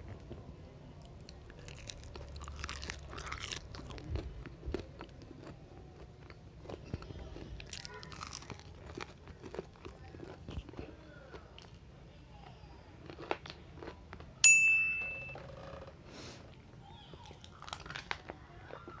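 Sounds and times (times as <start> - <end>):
person chewing crunchy food: 1.0 - 11.8, 13.0 - 14.4, 17.2 - 19.0.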